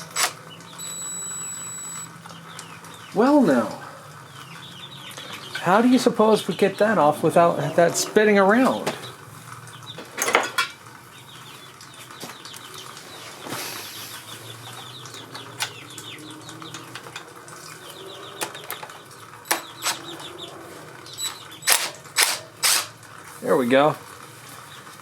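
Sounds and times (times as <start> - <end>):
young chickens peeping: 0.0 - 10.2, 10.8 - 21.8, 24.0 - 25.0
metal tools clinking on engine: 10.2 - 10.8, 14.9 - 20.4, 21.2 - 23.0.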